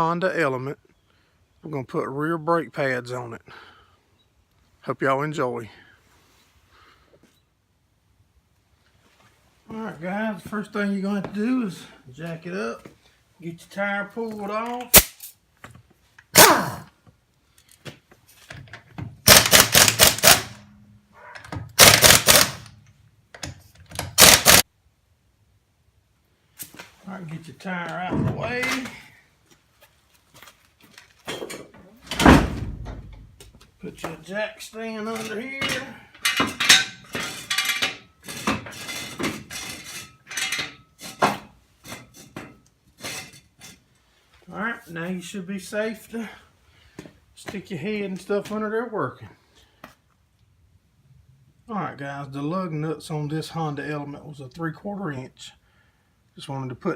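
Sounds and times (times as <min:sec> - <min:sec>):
impact wrench rattling: 0:19.2 - 0:20.7, 0:21.6 - 0:22.8, 0:23.4 - 0:24.6, 0:35.2 - 0:40.8
metal jack stand clanks and scrapes: 0:35.0 - 0:43.9.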